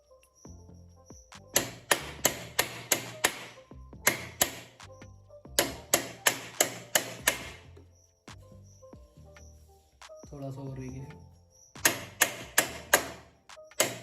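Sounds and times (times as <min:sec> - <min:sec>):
hammer striking metal: 0:01.5 - 0:04.8, 0:05.6 - 0:07.7, 0:11.8 - 0:14.0.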